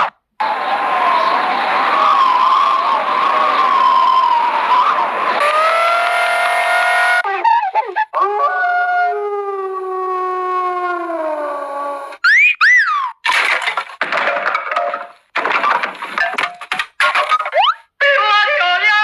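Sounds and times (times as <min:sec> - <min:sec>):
cartoon tone sliding downward: 0:12.2 - 0:13.1
crashing and smashing: 0:13.2 - 0:17.8.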